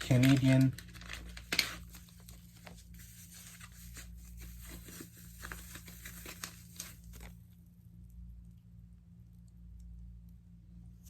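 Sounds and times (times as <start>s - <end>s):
packaging crinkling and tearing: 0.0s - 7.4s
steady low hum: 0.0s - 11.0s.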